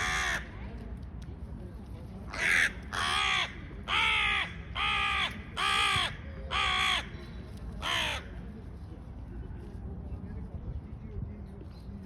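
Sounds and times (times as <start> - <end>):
crow cawing: 2.3 - 7.1.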